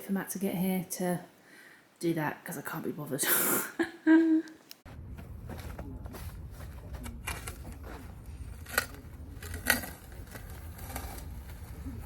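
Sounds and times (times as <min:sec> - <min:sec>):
steady low rumble: 0:04.8 - 0:12.0.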